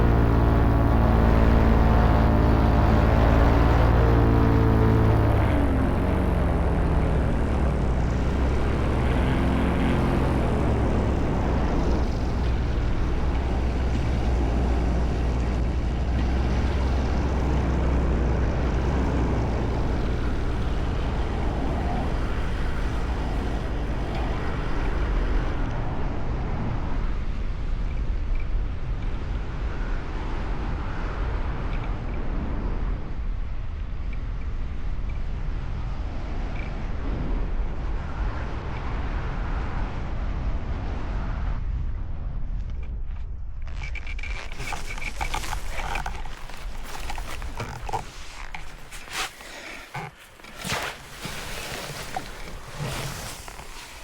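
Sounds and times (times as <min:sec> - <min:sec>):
paramotor engine drone: 0:00.0 - 0:27.8, 0:43.7 - 0:54.0.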